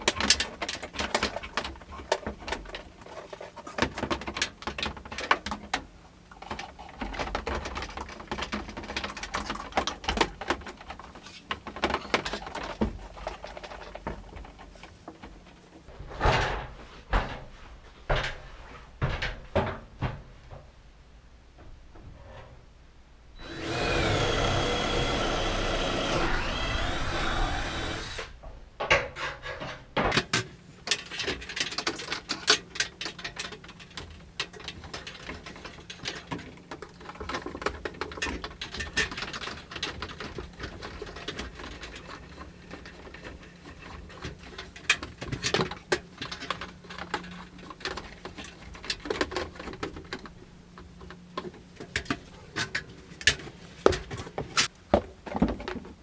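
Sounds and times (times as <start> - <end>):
power drill whining: 23.4 - 28.4.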